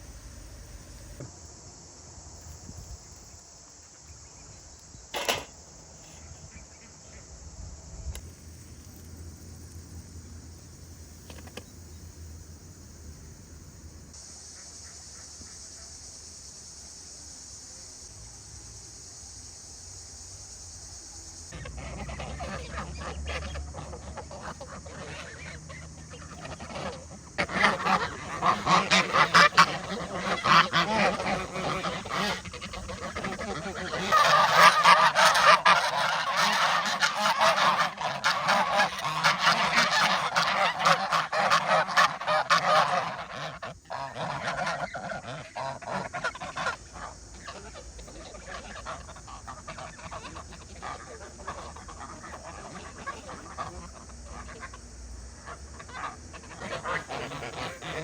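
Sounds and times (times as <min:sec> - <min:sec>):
geese honking: 0:00.0 - 0:01.3, 0:21.5 - 0:58.0
faint high hiss: 0:00.0 - 0:23.7.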